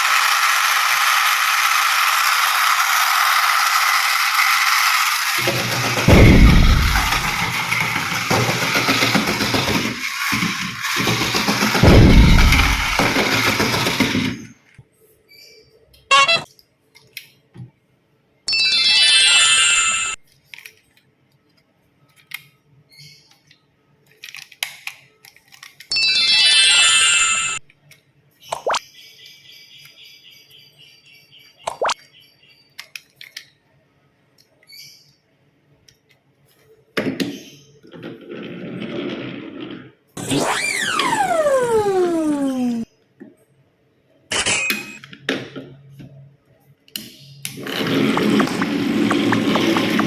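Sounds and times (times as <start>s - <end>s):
rustling and rattling: 0.0s - 14.5s
toy trains clattering: 0.0s - 14.5s, 24.1s - 27.6s, 47.5s - 50.0s
toy trains clicking and knocking: 0.0s - 14.5s, 24.1s - 27.9s, 32.8s - 33.5s, 47.4s - 50.0s
loud noisy sound: 5.3s - 14.4s, 47.6s - 50.0s
small clicks: 32.7s - 33.6s
electronic blip: 48.2s - 50.0s.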